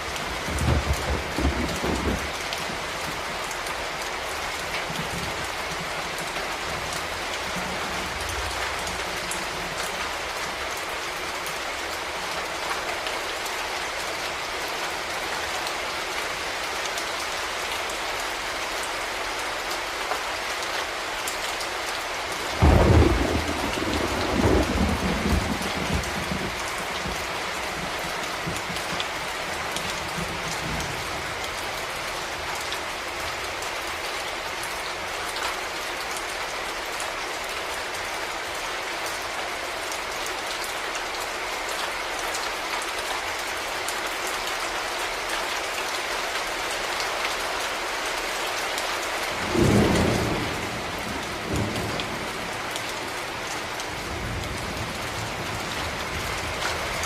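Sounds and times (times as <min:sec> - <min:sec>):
steady rain: 0:00.0 - 0:57.0
thunder rumble: 0:22.6 - 0:29.0.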